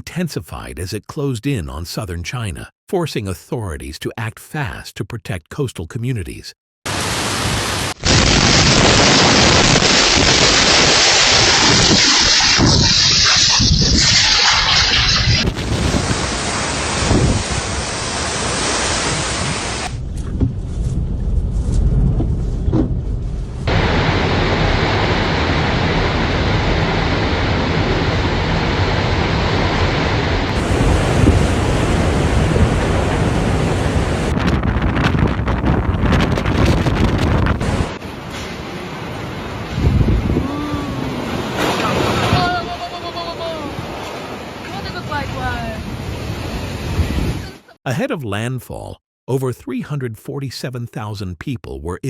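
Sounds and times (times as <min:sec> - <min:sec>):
heavy rain: 0:06.9 - 0:13.4, 0:14.0 - 0:20.0, 0:23.7 - 0:34.3, 0:37.6 - 0:47.4
typhoon wind: 0:19.4 - 0:47.6
wind buffeting microphone: 0:30.6 - 0:37.9, 0:39.7 - 0:40.7.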